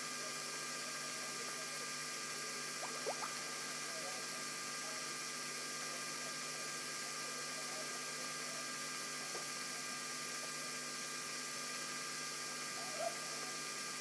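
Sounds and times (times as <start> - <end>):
electrical hum: 2.6 - 4.2.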